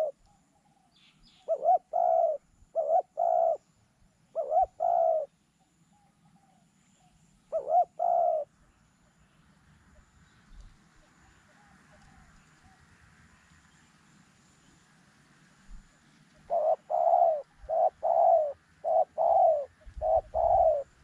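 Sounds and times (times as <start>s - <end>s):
dove cooing: 1.4s - 3.6s, 4.3s - 5.3s, 7.5s - 8.5s, 16.4s - 21.0s.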